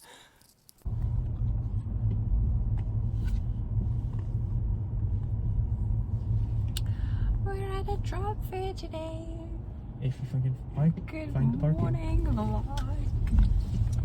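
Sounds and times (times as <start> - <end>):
car interior low rumble: 0.8 - 14.0.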